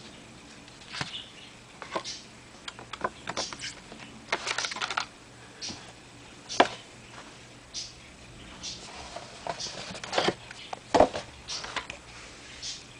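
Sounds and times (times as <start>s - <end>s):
rustling plastic packaging: 3.4s - 5.1s.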